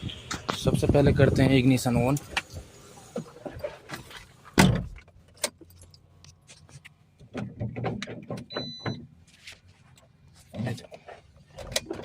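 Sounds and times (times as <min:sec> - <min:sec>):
handling clicks and knocks: 0:03.9 - 0:09.1.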